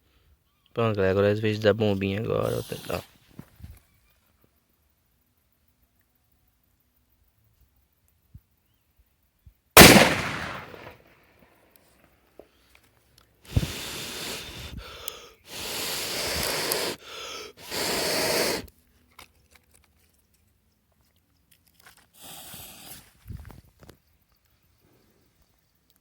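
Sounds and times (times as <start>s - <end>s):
firework sputtering hiss: 13.5s - 18.7s, 22.1s - 23.4s.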